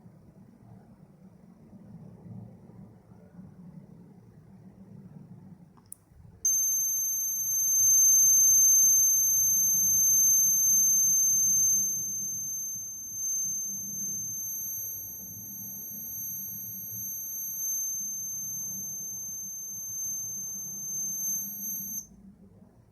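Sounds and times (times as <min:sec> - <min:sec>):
click: 0:05.8 - 0:22.0
high-pitched alarm buzzer tone: 0:06.5 - 0:22.1.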